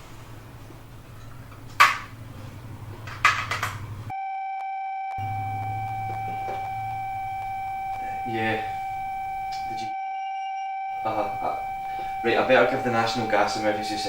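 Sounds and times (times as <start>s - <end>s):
alarm continuous high-pitched tone: 4.1s - 14.0s.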